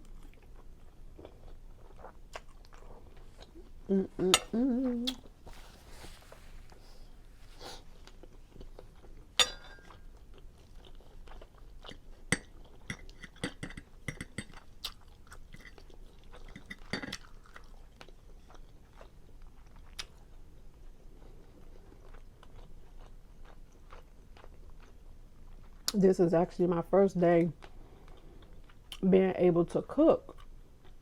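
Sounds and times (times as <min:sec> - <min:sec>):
wet chewing and mouth smacks: 0:00.0 - 0:03.8, 0:05.0 - 0:05.5, 0:14.2 - 0:26.0
sharp mouth clicks: 0:05.0 - 0:05.3.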